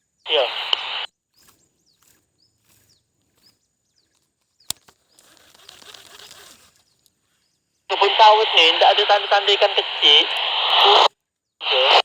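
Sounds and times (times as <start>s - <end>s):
faint small bird chirps: 0.4s - 7.7s.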